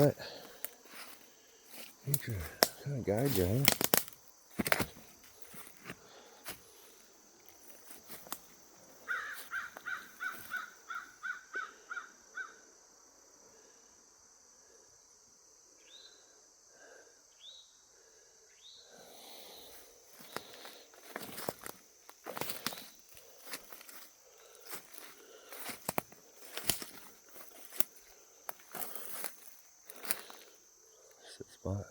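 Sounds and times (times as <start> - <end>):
crow cawing: 9.0 - 12.6
faint rising bird calls: 9.0 - 12.6.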